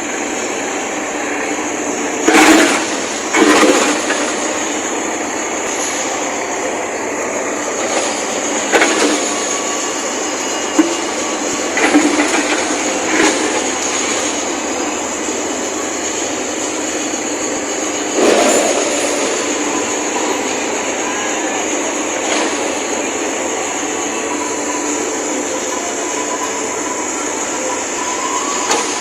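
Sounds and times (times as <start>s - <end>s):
backhoe loader engine running: 0.0s - 29.0s.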